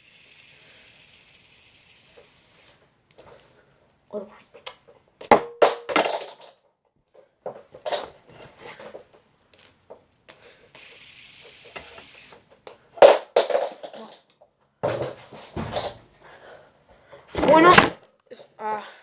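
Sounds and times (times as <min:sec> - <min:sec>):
steady hiss: 0:00.0 - 0:04.6, 0:09.5 - 0:13.0.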